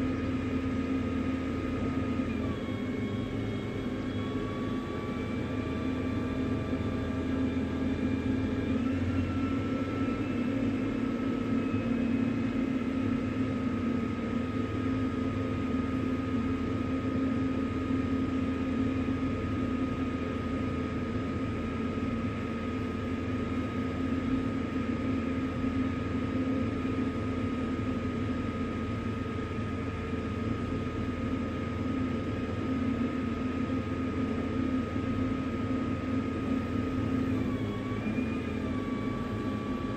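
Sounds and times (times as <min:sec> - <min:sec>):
motor droning with high whine: 0:00.0 - 0:39.9.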